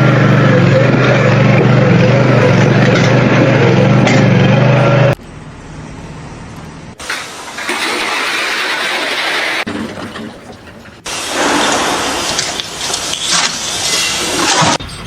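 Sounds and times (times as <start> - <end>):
motor humming: 0.0 - 9.7
loud rushing noise: 11.1 - 14.8.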